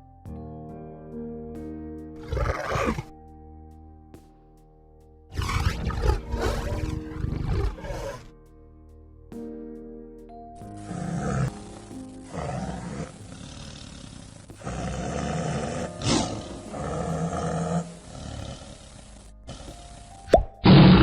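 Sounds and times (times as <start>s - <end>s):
background music: 0.0s - 21.0s
tiger roaring and growling: 2.2s - 3.1s, 5.3s - 8.3s, 10.7s - 21.0s.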